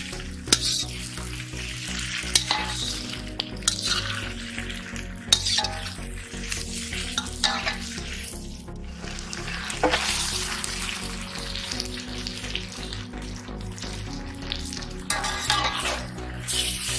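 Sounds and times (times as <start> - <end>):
background music with a beat: 0.0 - 16.9.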